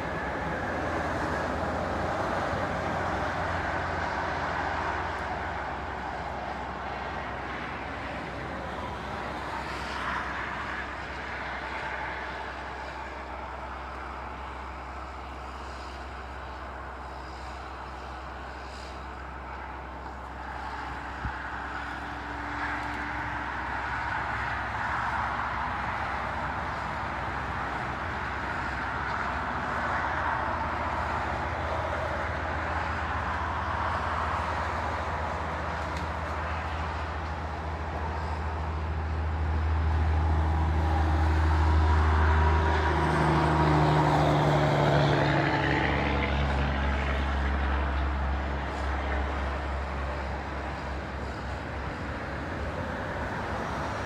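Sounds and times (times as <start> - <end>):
large engine running: 30.4 - 54.0.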